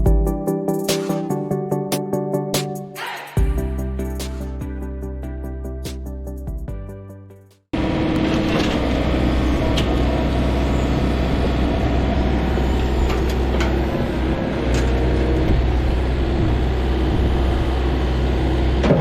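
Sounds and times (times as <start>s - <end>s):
diesel engine droning: 7.8s - 19.0s.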